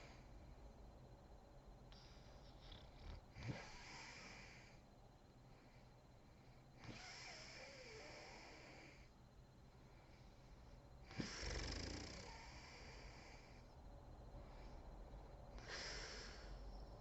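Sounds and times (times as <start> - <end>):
woman snoring: 2.5 - 4.8, 6.8 - 9.0, 11.1 - 13.5.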